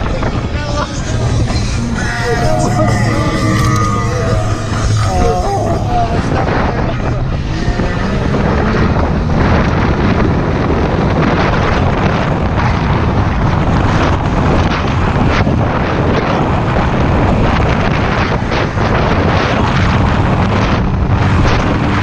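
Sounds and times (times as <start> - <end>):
wind buffeting microphone: 0.0 - 22.0
motorboat engine hum: 0.7 - 9.6.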